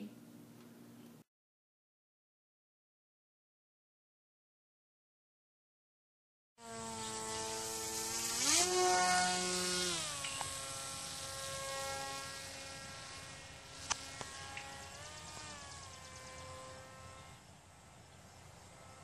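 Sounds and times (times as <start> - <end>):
model airplane motor buzzing: 6.6 - 19.0.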